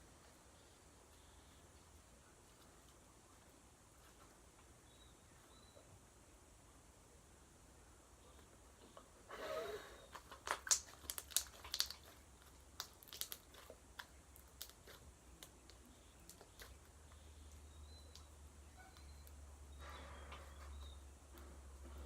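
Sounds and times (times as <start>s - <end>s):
slime wet crackling clicks: 10.4s - 12.1s, 12.8s - 16.8s.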